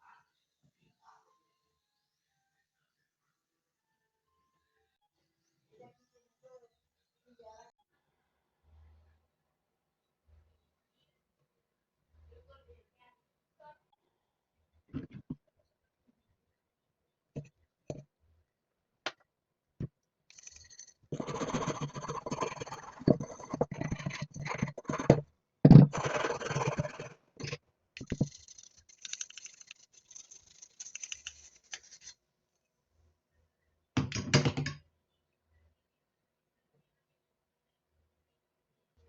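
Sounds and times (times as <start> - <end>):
hard objects scraping: 20.3 - 32.1.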